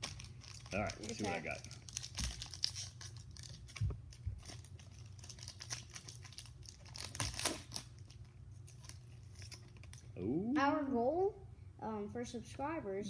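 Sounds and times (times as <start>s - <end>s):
foil wrapper crinkling and tearing: 0.0s - 10.1s.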